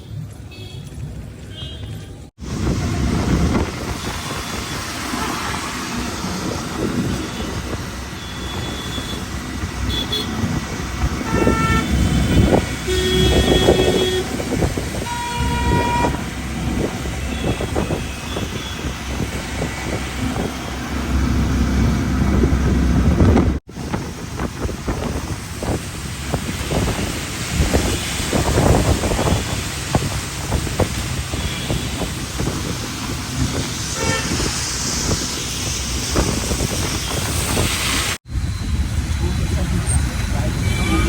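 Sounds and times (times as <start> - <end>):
road traffic: 0.0 - 41.0
vehicle horns honking: 7.2 - 19.2, 31.3 - 32.2, 33.8 - 34.7, 40.5 - 41.0.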